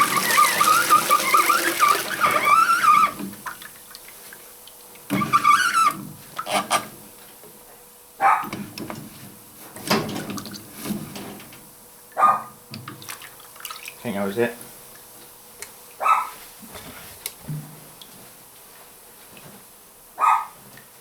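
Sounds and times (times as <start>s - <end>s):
wavering squeal: 0.0s - 3.2s
water splashing and gurgling: 0.0s - 4.2s.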